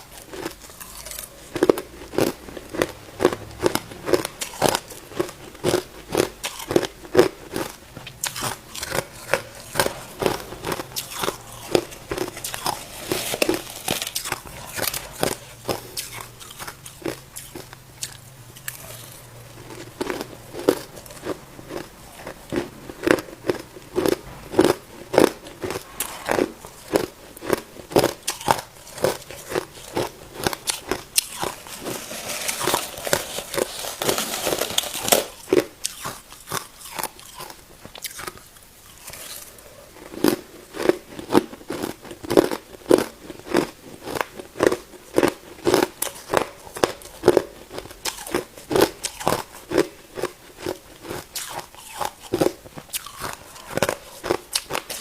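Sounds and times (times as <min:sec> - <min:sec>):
ice crunching being chewed: 0:00.0 - 0:55.0.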